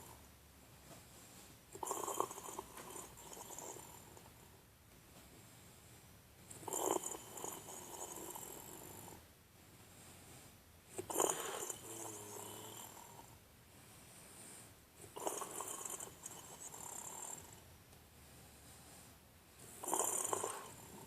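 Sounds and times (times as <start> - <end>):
quiet breathing: 0.0 - 21.0
person snoring: 1.7 - 4.3, 6.6 - 9.2, 11.0 - 13.4, 15.0 - 17.6, 19.6 - 21.0.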